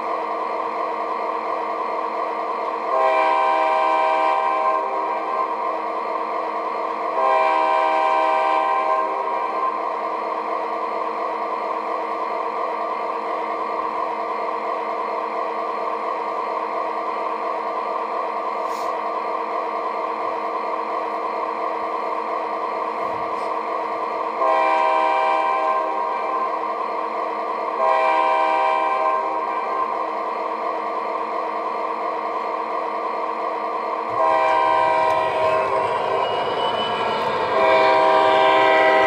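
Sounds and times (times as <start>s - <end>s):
locomotive horn blasts: 2.9s - 5.2s, 7.1s - 9.6s, 24.4s - 26.2s, 27.8s - 30.0s, 34.1s - 39.0s.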